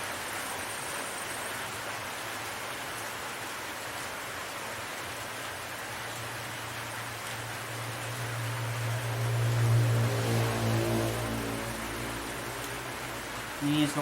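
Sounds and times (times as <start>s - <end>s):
background hiss: 0.0s - 14.0s
low hum: 7.5s - 13.6s.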